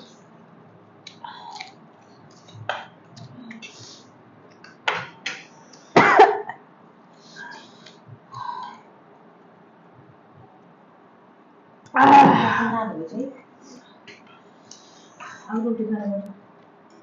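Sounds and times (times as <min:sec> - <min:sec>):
person coughing: 0:06.0 - 0:06.6, 0:12.0 - 0:12.8.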